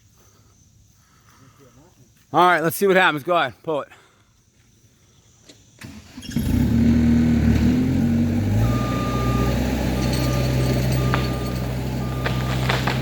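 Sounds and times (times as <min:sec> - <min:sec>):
skid steer engine revving: 0:05.8 - 0:13.0
reversing alarm beeping: 0:08.6 - 0:13.0.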